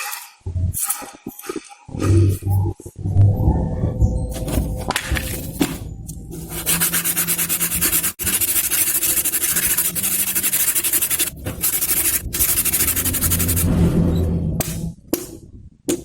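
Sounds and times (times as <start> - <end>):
abrasive scraping: 9.0 - 14.6.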